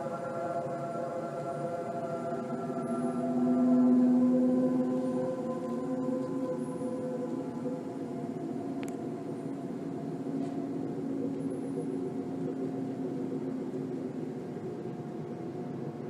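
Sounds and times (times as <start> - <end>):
droning hum: 0.0 - 16.0
click: 8.8 - 9.0.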